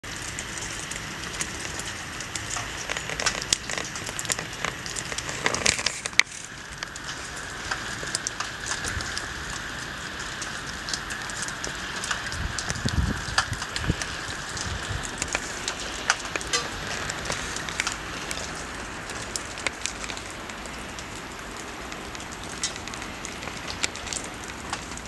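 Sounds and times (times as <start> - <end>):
rain and wet snow hissing: 0.0 - 25.0
drops ticking on surfaces: 1.4 - 9.2.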